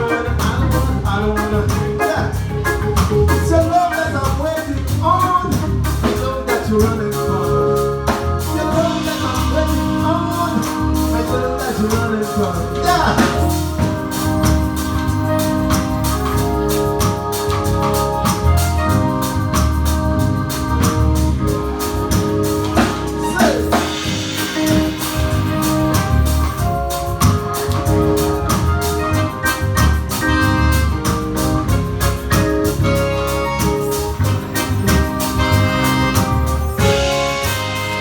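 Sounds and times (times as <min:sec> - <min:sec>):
bass: 0:00.0 - 0:38.0
organ chords: 0:00.0 - 0:38.0
drum beat: 0:08.2 - 0:38.0.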